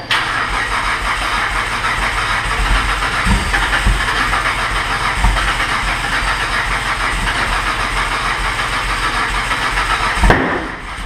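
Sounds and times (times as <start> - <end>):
car engine low pulsing: 0.0 - 11.0
heavy low thumps: 2.5 - 8.8.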